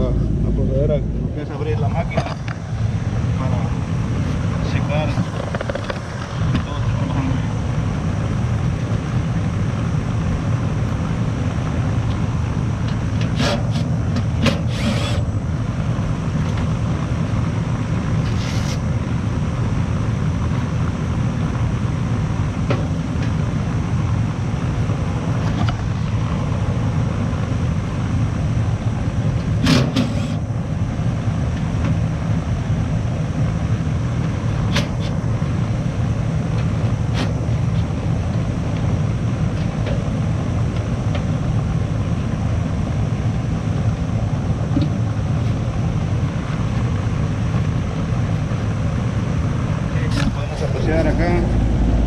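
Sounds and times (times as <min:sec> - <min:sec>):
outdoor unit fan running: 0:00.0 - 0:52.0.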